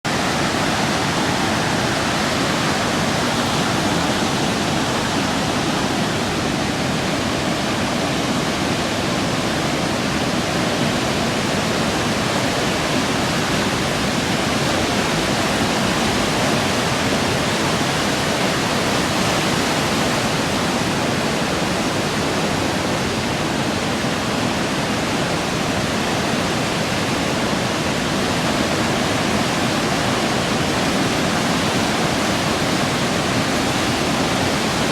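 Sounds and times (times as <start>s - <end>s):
floodwater rushing: 0.0s - 34.9s.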